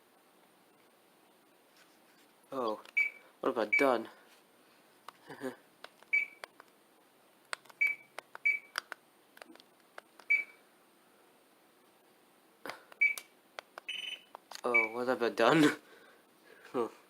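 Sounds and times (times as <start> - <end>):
short high beeps: 13.9 - 15.0.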